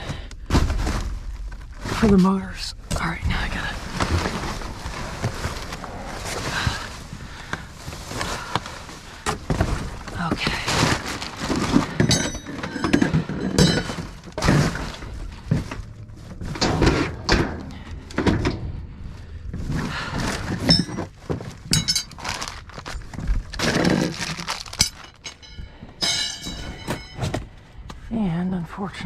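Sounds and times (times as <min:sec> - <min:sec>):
metal clanking in a dumpster: 0:10.9 - 0:18.9, 0:24.8 - 0:27.6.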